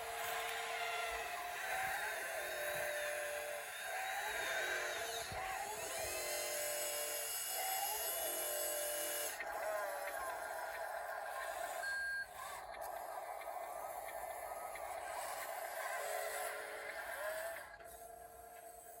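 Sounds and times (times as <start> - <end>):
small electric motors whining: 0.0 - 19.0.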